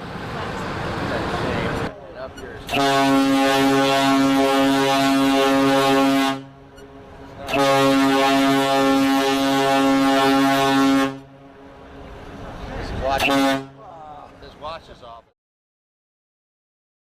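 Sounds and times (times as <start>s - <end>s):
deep ship horn blasts: 2.7s - 14.0s.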